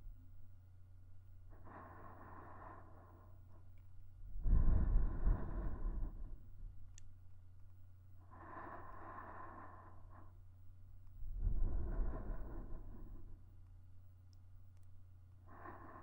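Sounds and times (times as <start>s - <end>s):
woman breathing close to microphone: 1.5s - 6.8s, 8.2s - 10.5s, 11.1s - 13.5s, 15.4s - 16.0s
air rumbling on microphone: 4.2s - 6.8s, 11.2s - 13.4s.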